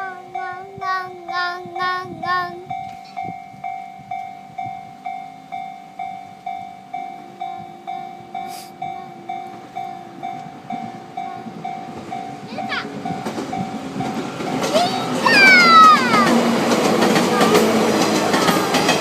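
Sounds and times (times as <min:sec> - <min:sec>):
level crossing warning bell: 0:00.0 - 0:19.0.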